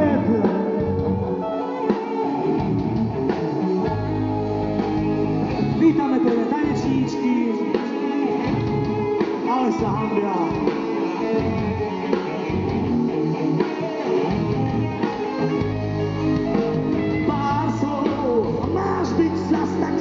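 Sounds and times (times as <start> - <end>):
person singing: 0.0 - 2.4, 5.6 - 11.4, 16.6 - 20.0
guitar accompaniment: 0.0 - 20.0.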